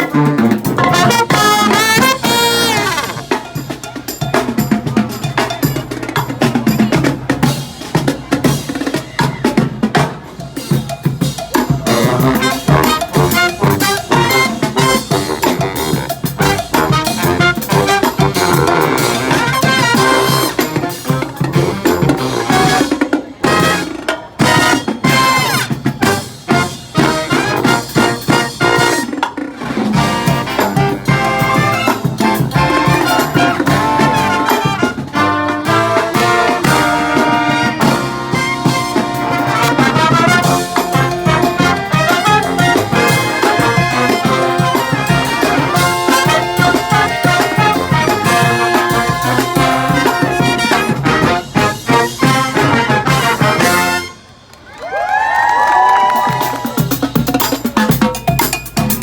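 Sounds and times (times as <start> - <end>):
brass band playing upbeat tune: 0.0 - 54.6, 55.9 - 59.0.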